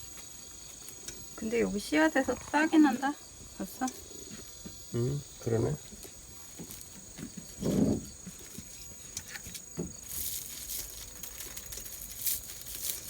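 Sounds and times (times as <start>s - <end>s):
crickets chirping: 0.0s - 13.0s
dry gourd rustling and crackling: 5.8s - 13.0s.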